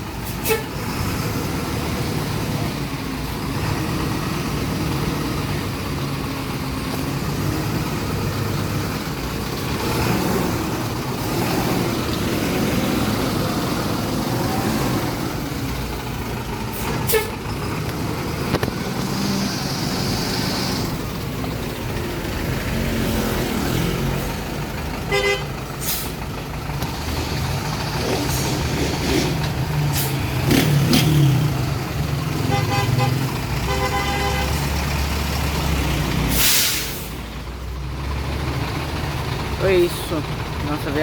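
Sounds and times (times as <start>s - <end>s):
bus diesel engine running: 0.0s - 41.0s
short air hiss: 36.3s - 37.2s.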